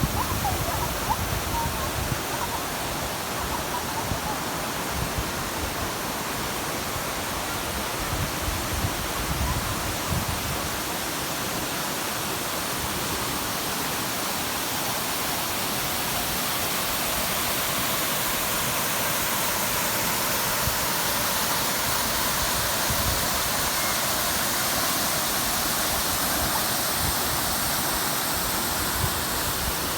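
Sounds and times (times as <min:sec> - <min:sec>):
flowing water rushing: 0:00.0 - 0:29.9.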